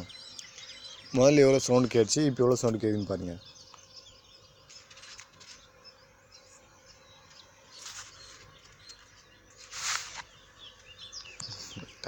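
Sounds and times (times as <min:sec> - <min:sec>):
small birds chirping: 0:00.0 - 0:12.0
bursts of hiss-like noise: 0:07.7 - 0:10.4.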